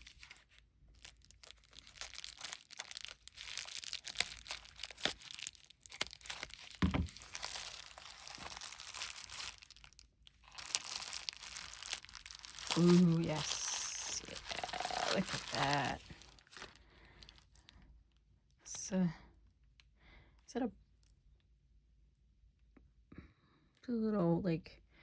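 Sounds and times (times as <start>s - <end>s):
bubble wrap crinkling: 0.0s - 17.7s
packing tape peeling and tearing: 1.1s - 16.8s.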